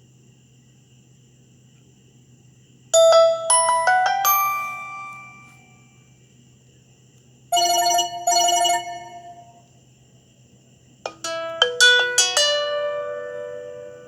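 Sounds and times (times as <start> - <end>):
wavering chime: 3.0 - 5.8.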